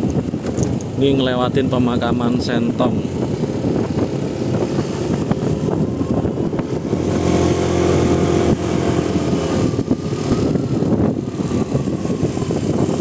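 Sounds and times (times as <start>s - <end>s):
motorcycle engine running: 0.0s - 13.0s
wind on microphone: 0.0s - 13.0s.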